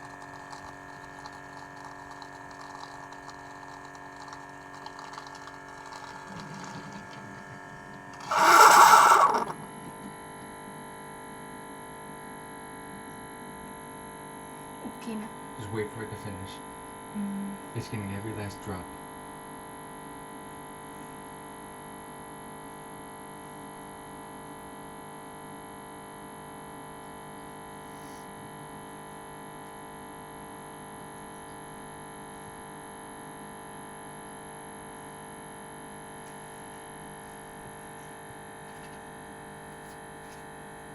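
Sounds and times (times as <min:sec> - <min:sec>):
coffee maker pump humming: 0:00.0 - 0:10.2.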